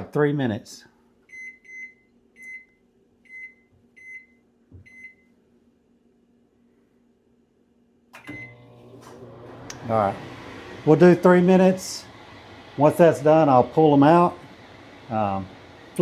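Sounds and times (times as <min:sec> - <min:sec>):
microwave keypad beeps: 0:01.3 - 0:05.3, 0:08.2 - 0:08.6
microwave oven humming: 0:08.2 - 0:16.0.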